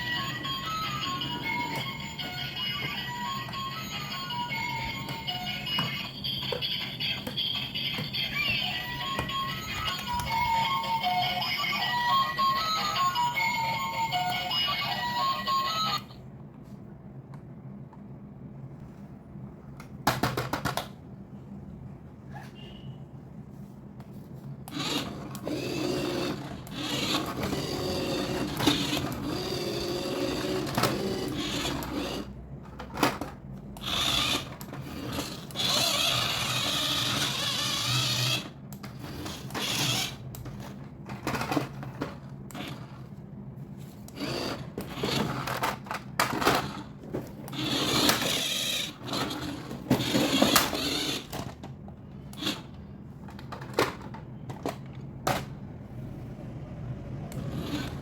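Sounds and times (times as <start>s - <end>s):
small electric motor whirring: 24.7s - 32.3s, 33.8s - 40.2s, 47.5s - 51.4s, 57.3s - 58.0s.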